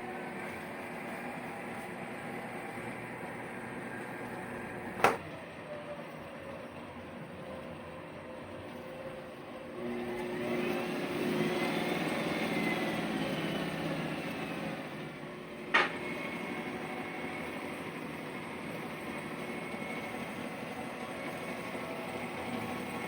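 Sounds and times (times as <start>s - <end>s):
treadmill motor whine: 0.0s - 23.0s.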